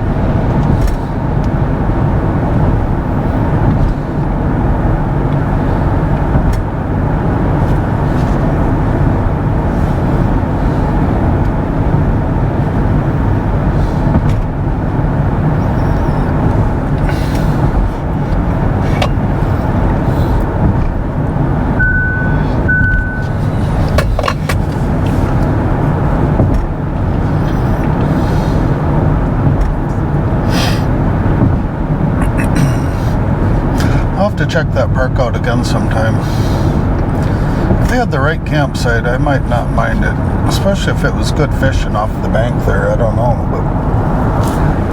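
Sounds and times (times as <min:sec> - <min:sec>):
road and tyre noise in car: 0:00.0 - 0:44.9
short high beeps: 0:21.8 - 0:23.4.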